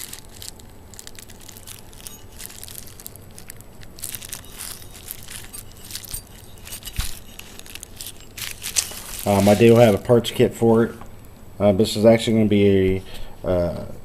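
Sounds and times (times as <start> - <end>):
packaging rustling and crinkling: 0.0 - 10.2.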